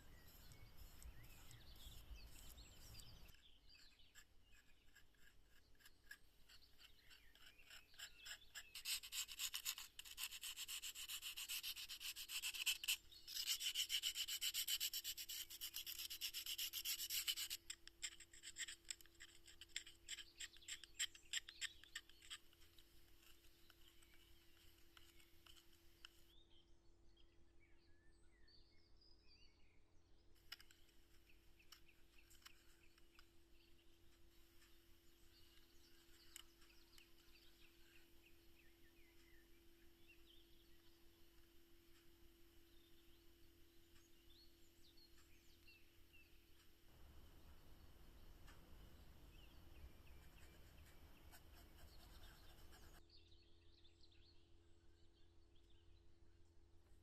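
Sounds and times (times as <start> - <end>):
soft scratchy hiss: 0.0 - 10.1, 14.8 - 26.4, 30.4 - 53.0
faint bird chirps: 0.0 - 56.5.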